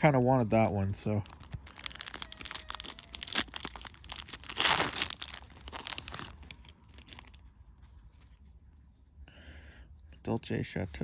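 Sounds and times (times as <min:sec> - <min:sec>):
foil wrapper crinkling and tearing: 0:00.0 - 0:07.5.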